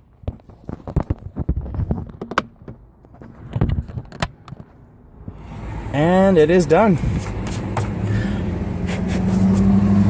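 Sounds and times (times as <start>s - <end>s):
plastic clicks and knocks: 0.2s - 4.7s.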